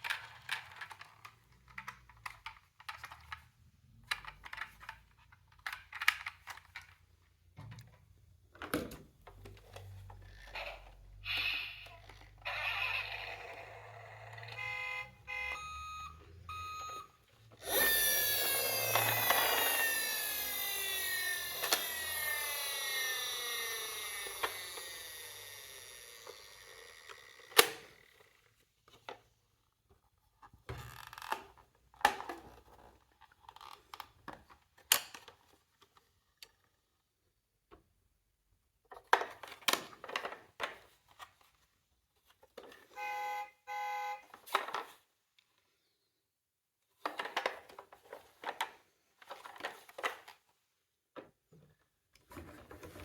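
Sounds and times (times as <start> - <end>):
electronic toy siren: 11.2 - 27.4, 43.0 - 44.3
toy short beeps: 43.0 - 44.3.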